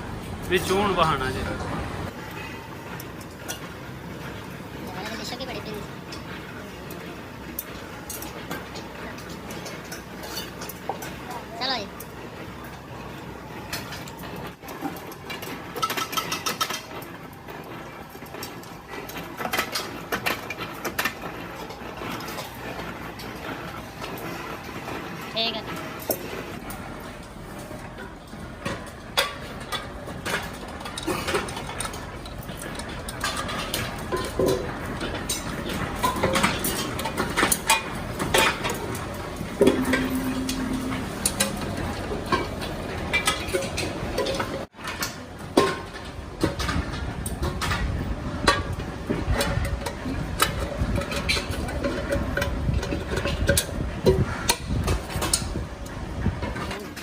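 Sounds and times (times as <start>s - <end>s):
metallic clanks of pressure cooker parts: 28.0s - 39.0s.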